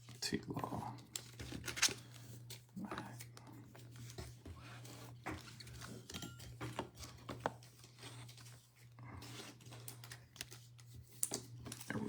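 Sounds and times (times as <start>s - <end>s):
trading cards clicking and rustling: 1.0s - 4.1s.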